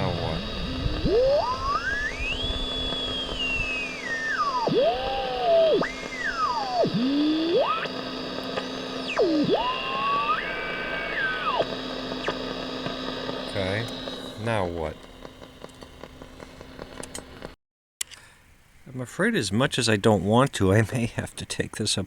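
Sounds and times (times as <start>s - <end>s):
radio whistle sweeping in pitch: 0.0s - 12.4s
steady low hum: 0.0s - 17.6s.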